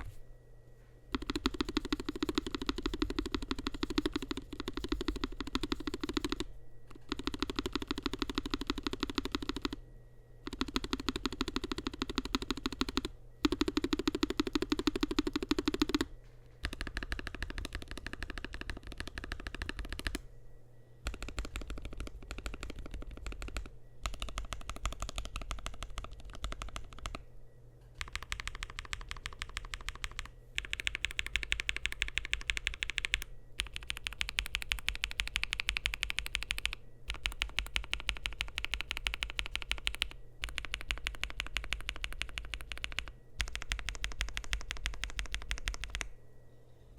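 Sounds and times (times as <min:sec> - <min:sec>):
mechanical keyboard typing: 0:01.1 - 0:09.8, 0:10.4 - 0:20.2, 0:21.0 - 0:27.2, 0:28.0 - 0:46.1.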